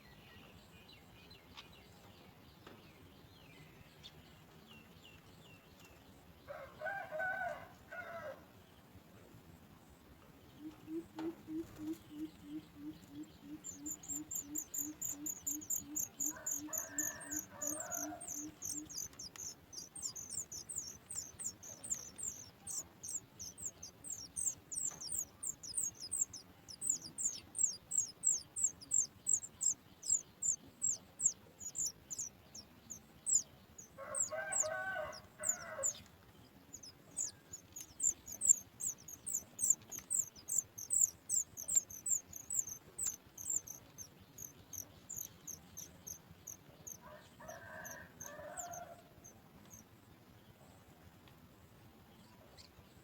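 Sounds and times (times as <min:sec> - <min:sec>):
baby bird begging chirps: 0:10.7 - 0:36.0, 0:36.7 - 0:48.8.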